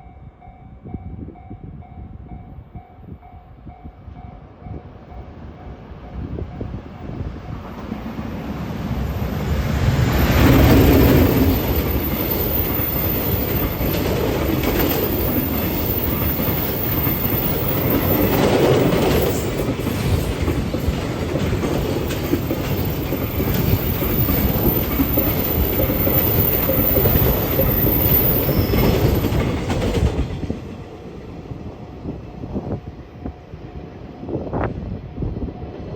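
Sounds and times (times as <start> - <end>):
freight train wagons rolling past: 4.4 - 34.3
wheels clattering over rail joints: 10.1 - 30.4
wheel squeal: 10.5 - 14.0, 22.3 - 29.4.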